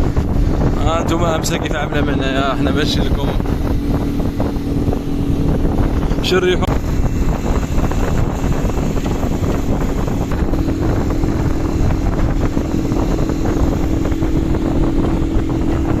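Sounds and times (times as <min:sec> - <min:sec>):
vehicle engine running: 0:00.0 - 0:16.0
wind buffeting microphone: 0:00.0 - 0:16.0.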